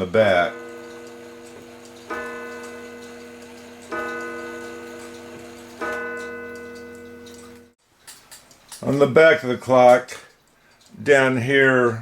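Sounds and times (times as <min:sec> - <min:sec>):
clock gong ringing: 0:00.0 - 0:07.8.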